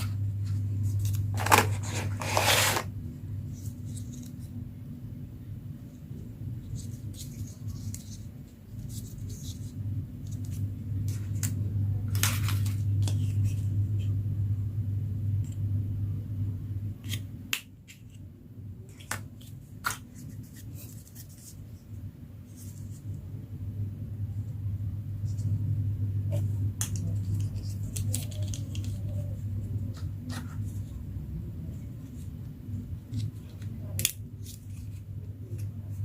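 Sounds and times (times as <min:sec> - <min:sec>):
steady low hum: 0:00.0 - 0:36.0
plastic packaging crinkling and clicking: 0:26.9 - 0:29.3.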